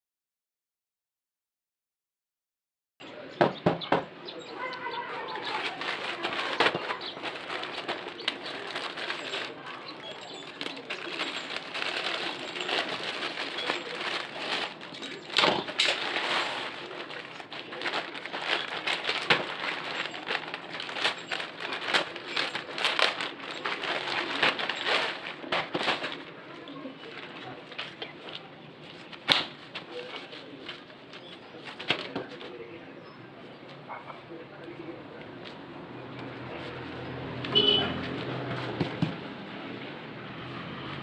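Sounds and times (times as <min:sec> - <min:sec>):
plastic packaging crinkling: 0:04.6 - 0:32.5.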